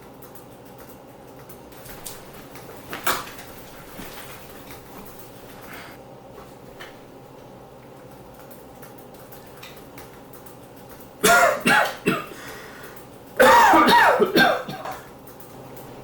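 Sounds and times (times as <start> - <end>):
person coughing: 11.2 - 12.7, 13.4 - 15.1.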